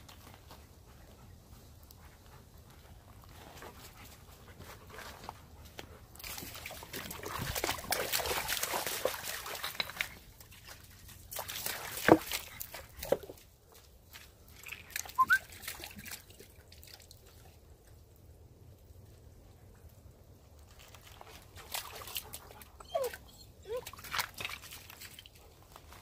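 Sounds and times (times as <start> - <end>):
wet sloshy crunching: 6.1 - 17.6, 20.6 - 22.6, 23.6 - 26.0.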